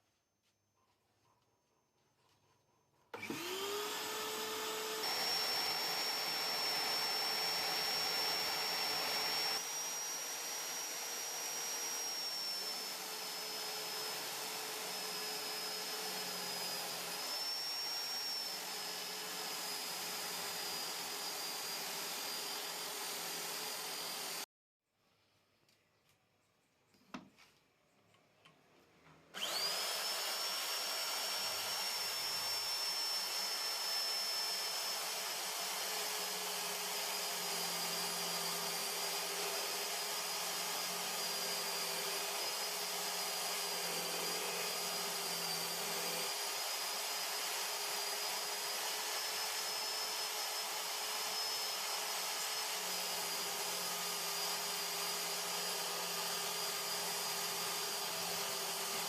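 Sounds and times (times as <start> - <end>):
electric drill whining: 3.2 - 24.5, 29.4 - 59.0.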